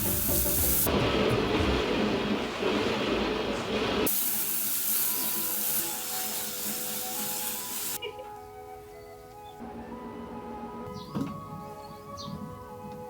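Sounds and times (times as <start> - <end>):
water spraying: 0.0 - 8.0
soft background music: 5.6 - 13.0.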